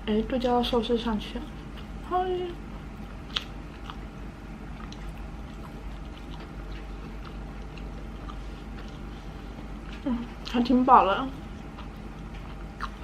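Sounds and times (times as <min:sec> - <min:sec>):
low hum: 0:00.0 - 0:13.0
wet chewing and mouth clicks: 0:02.7 - 0:10.6, 0:11.4 - 0:13.0.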